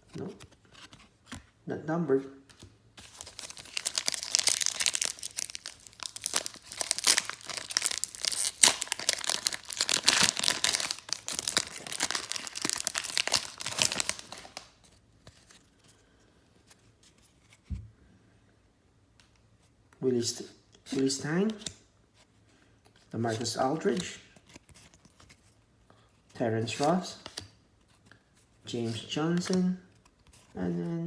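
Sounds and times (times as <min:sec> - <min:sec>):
plastic foil wrapper crinkling: 0:03.0 - 0:14.8.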